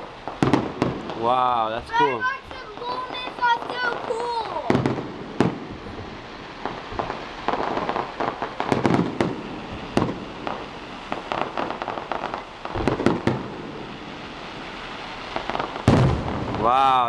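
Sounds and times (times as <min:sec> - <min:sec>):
fireworks bangs and crackling: 0:00.0 - 0:17.0.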